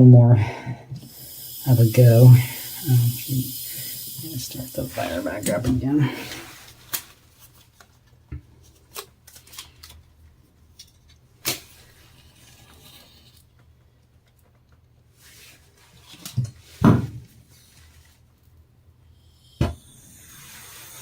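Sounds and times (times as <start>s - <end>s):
loud thump: 16.8s - 17.2s.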